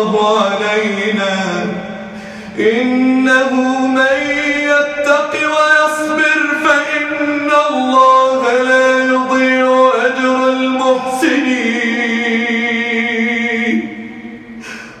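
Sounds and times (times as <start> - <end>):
man chanting melodically: 0.0 - 14.3.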